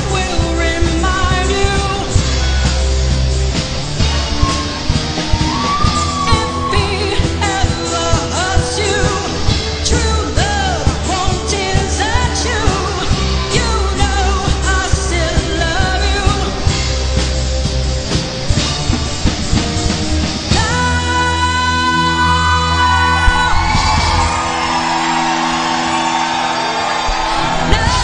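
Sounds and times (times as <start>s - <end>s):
person singing: 0.0s - 2.7s, 4.3s - 17.0s, 20.5s - 24.6s, 27.3s - 28.0s
live rock band playing: 0.0s - 28.0s.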